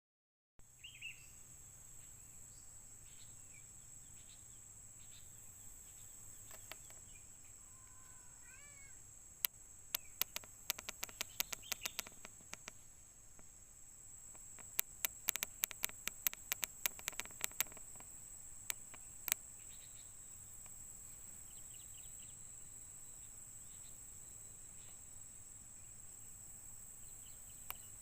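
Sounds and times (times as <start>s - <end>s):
wild birds calling: 5.1s - 9.0s, 10.0s - 12.7s, 14.4s - 18.0s
fast sharp clicks: 6.4s - 7.1s, 9.4s - 12.8s, 14.3s - 19.4s.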